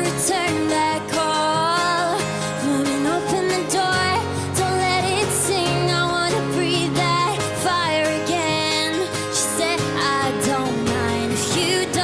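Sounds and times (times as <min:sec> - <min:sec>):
live pop-rock band: 0:00.0 - 0:12.0.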